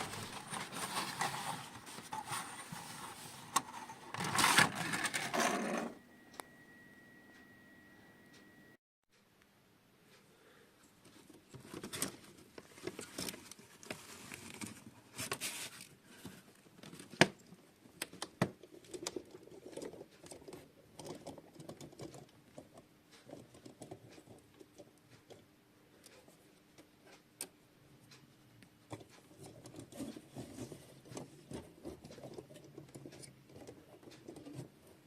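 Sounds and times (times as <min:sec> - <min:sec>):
handling rustling: 0:00.0 - 0:05.4.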